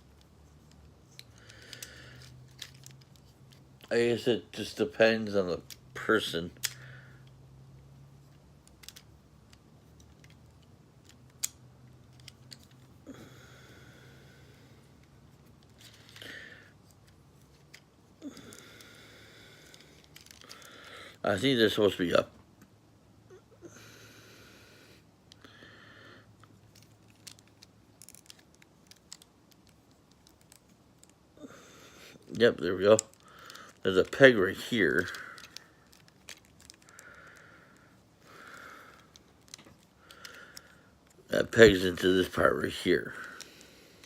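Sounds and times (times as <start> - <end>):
plastic toy parts clicking: 0.1 - 3.9, 5.6 - 6.8, 8.3 - 12.9, 15.0 - 18.6, 19.6 - 20.8, 26.4 - 31.2, 32.8 - 41.2.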